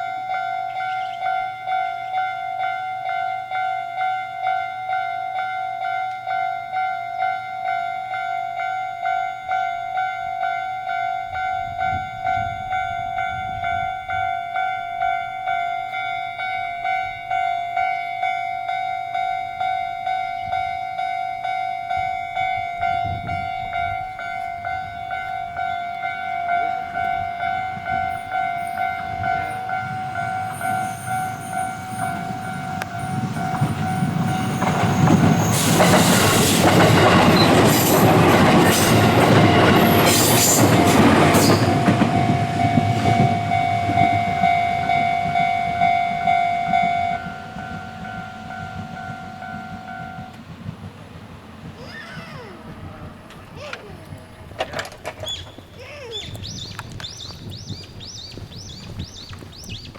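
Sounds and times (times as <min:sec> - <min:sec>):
level crossing alarm bell: 0:00.0 - 0:50.5
train wheels rattling over rails: 0:21.4 - 0:59.9.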